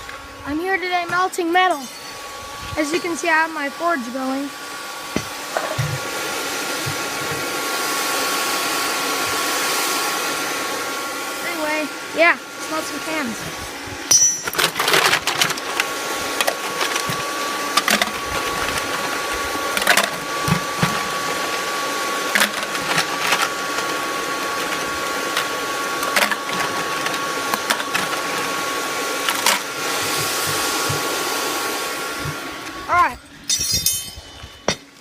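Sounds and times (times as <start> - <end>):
hairdryer blowing with whine: 0.0 - 35.0.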